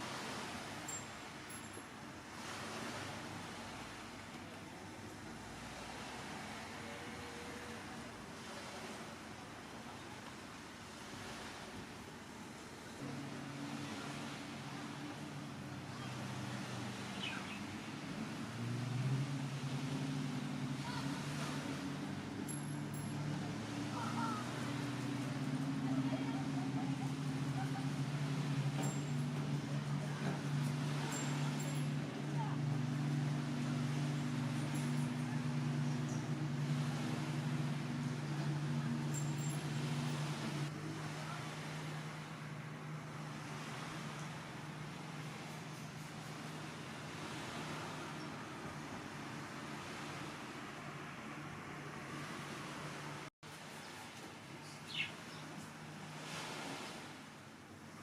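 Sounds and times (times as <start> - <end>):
yacht engines humming: 0.0 - 58.0
faint bird chirps: 17.1 - 17.7.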